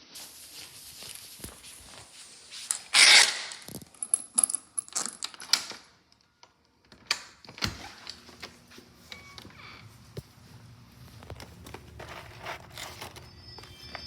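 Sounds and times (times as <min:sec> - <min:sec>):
packaging rustle: 0:11.1 - 0:14.0.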